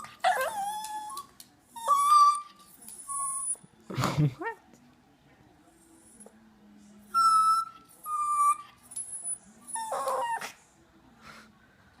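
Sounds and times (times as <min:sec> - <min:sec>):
small dog whining: 0:00.0 - 0:03.6, 0:07.2 - 0:10.6.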